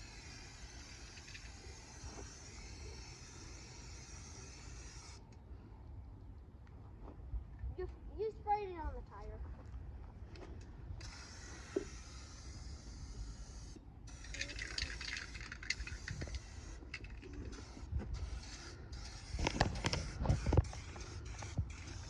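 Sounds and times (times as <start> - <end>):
spray paint can hissing: 0.0 - 5.2, 11.0 - 22.0.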